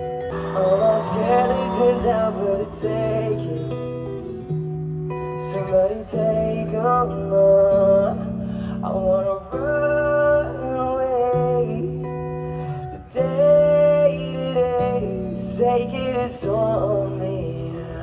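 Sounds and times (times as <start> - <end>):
guitar chords: 0.0 - 18.0
person singing long bending notes: 0.3 - 4.4.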